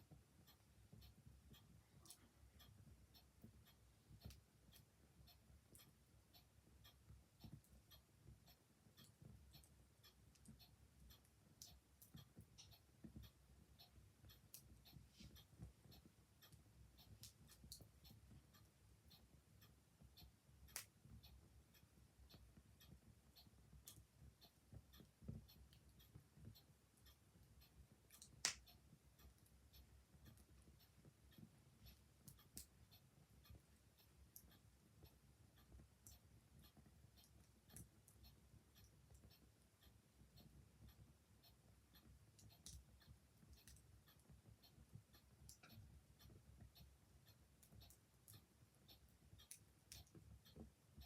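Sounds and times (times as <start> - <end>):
ticking clock: 0.0 - 51.0
wood fire crackling: 28.2 - 28.6.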